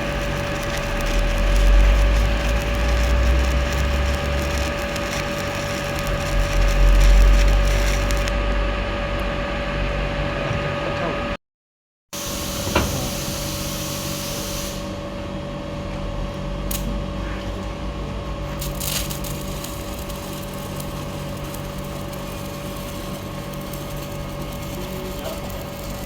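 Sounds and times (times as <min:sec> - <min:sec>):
welding arc crackling and hissing: 0:00.0 - 0:08.4, 0:12.2 - 0:15.0, 0:18.4 - 0:26.0
electrical hum: 0:00.0 - 0:11.4, 0:14.8 - 0:26.0.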